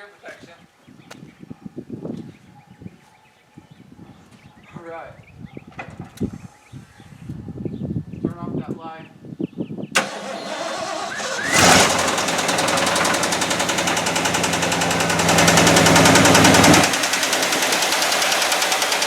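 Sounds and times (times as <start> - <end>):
truck engine cranking: 10.0 - 19.0
engine running with loud knock: 11.2 - 19.0.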